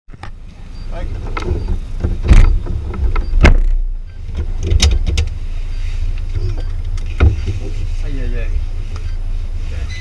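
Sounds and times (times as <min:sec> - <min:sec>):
car low rumble: 0:00.1 - 0:10.0
sharp knocks and thumps: 0:01.0 - 0:05.4, 0:06.3 - 0:07.8.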